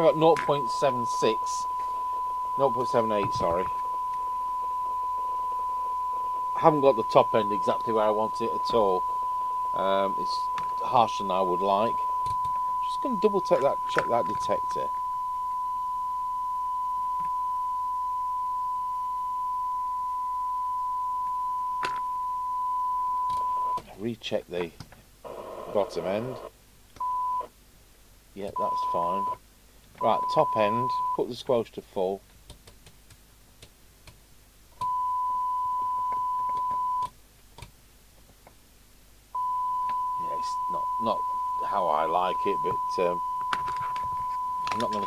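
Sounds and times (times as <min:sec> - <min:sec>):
steady pure test tone: 0:00.0 - 0:23.8, 0:28.4 - 0:29.4, 0:30.0 - 0:31.2, 0:34.8 - 0:37.1, 0:39.4 - 0:45.0.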